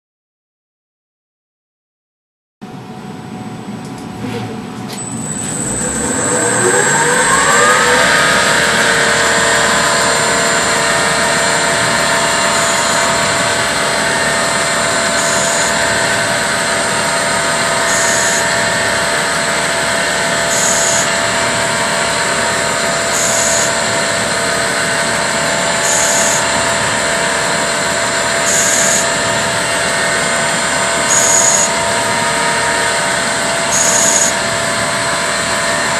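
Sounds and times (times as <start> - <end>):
lathe spindle whining: 4.9 - 35.9
high-pitched cutting tone: 5.0 - 19.2, 19.9 - 21.4, 22.4 - 24.0, 25.6 - 35.5.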